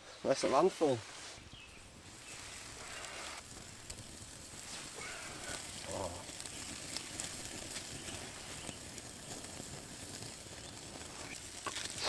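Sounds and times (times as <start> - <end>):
campfire crackling and hissing: 0.0 - 12.0.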